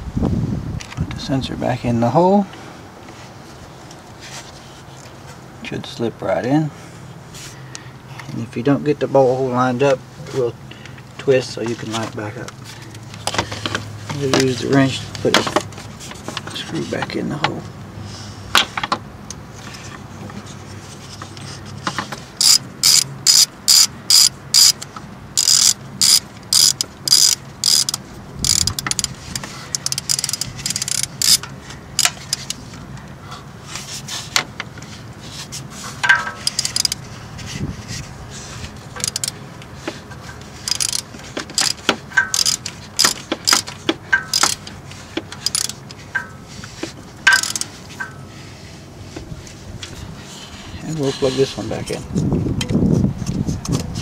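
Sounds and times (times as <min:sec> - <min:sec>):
ratchet wrench clicking: 0:22.4 - 0:32.6, 0:36.1 - 0:37.0, 0:39.0 - 0:39.4, 0:40.6 - 0:44.7, 0:45.3 - 0:46.3, 0:47.3 - 0:47.7.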